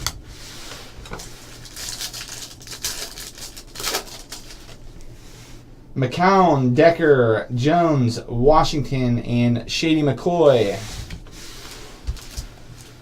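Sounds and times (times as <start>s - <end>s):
wrapper crinkling: 1.1s - 4.8s, 12.1s - 13.0s.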